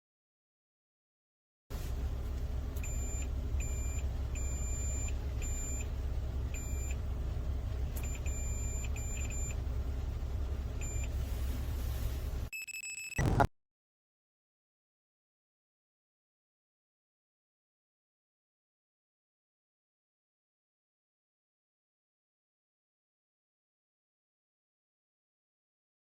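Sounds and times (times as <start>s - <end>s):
steady low hum: 1.7s - 12.5s
short electronic beeps: 2.8s - 5.9s, 6.6s - 7.0s, 8.0s - 9.6s, 10.8s - 11.1s, 12.5s - 13.5s.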